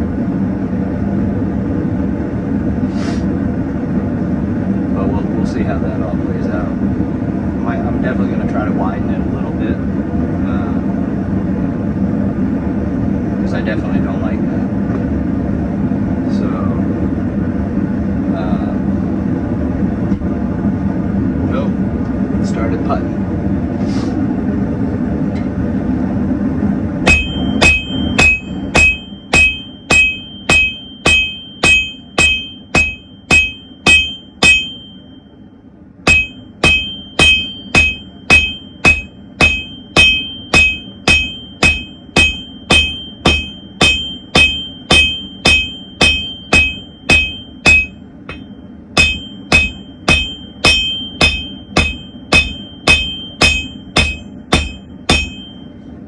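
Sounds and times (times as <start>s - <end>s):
hammer ringing on anvil: 27.0s - 35.3s, 36.1s - 55.8s.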